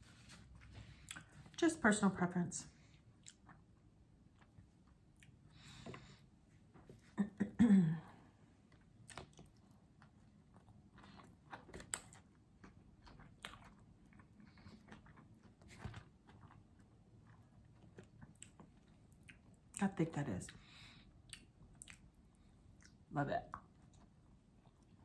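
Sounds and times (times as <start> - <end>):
chewing with wet mouth clicks: 3.1 - 5.4, 8.7 - 19.9, 21.2 - 25.0.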